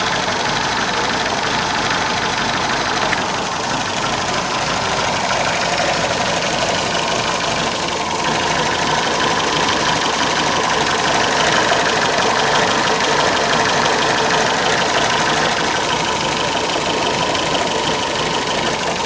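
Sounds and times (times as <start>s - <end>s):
car engine idling with misfire: 0.0s - 19.0s.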